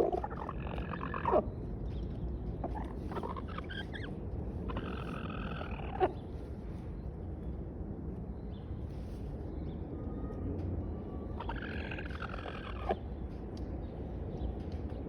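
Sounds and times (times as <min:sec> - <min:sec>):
chicken making drawn-out calls: 0:00.0 - 0:01.5, 0:11.4 - 0:13.0.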